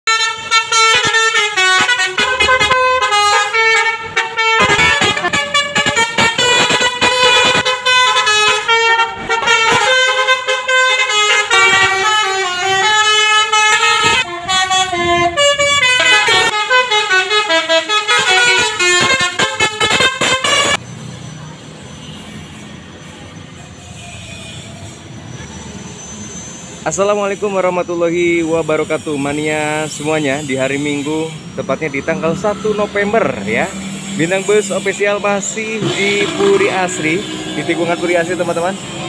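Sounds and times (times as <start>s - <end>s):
musical bus horn melody: 0.0s - 20.8s, 33.3s - 39.0s.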